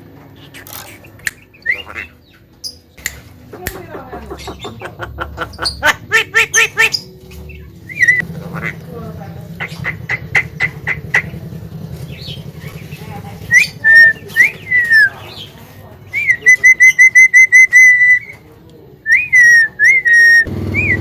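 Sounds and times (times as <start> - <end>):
myna whistling and chirping: 1.1 - 2.8, 5.5 - 8.2, 12.1 - 18.4, 19.1 - 21.0.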